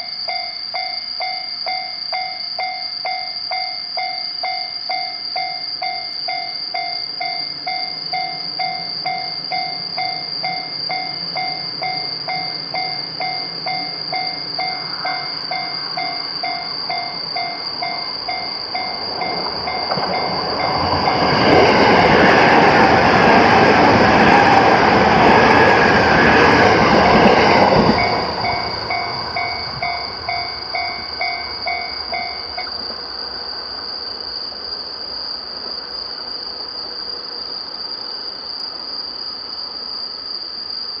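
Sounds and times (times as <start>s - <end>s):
train passing: 0.8s - 38.0s.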